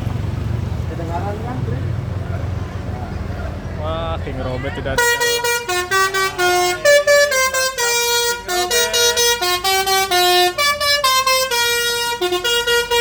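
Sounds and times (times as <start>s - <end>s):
multi-tone air horn melody: 5.0s - 13.0s.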